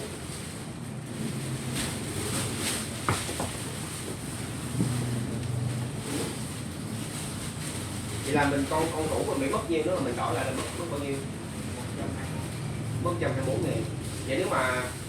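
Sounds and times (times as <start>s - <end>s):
low rumbling handling noise: 0.8s - 8.3s.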